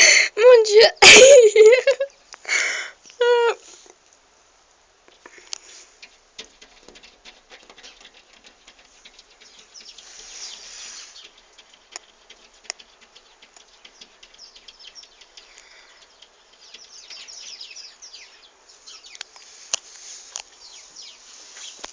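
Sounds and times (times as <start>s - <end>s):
cat claws scratching window glass: 5.6s - 17.2s.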